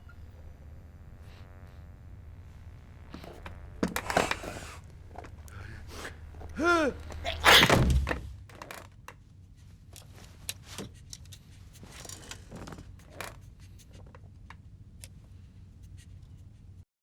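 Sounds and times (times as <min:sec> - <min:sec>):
man sneezing loudly: 0:05.6 - 0:08.1
small clicks and knocks: 0:09.9 - 0:15.2.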